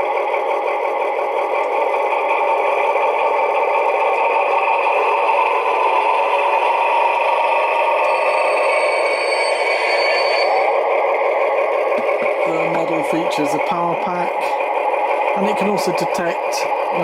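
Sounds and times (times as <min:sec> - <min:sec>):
diesel engine sound from small speaker: 0:00.0 - 0:17.0.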